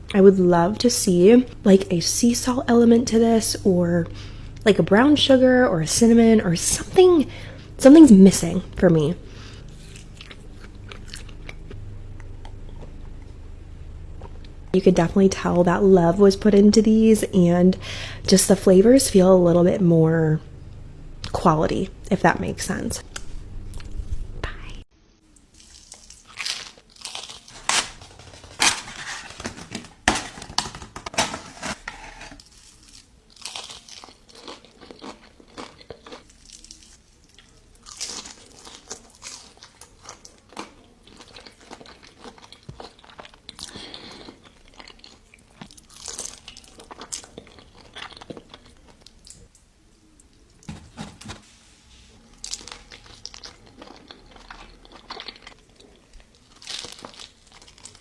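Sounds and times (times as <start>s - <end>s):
person chewing crunchy food: 9.5s - 13.2s, 25.5s - 49.4s, 52.3s - 58.0s.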